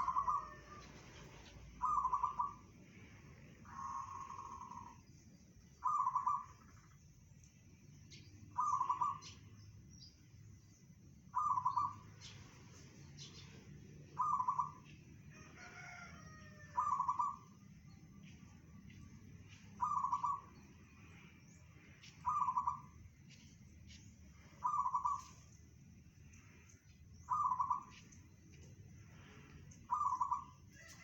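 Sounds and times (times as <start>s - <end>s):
dove cooing: 0.0s - 2.6s, 3.6s - 5.0s, 5.8s - 6.5s, 8.6s - 9.3s, 11.4s - 12.0s, 14.2s - 14.8s, 16.8s - 17.5s, 19.8s - 20.5s, 22.0s - 22.9s, 24.6s - 25.4s, 27.3s - 28.0s, 29.9s - 31.0s.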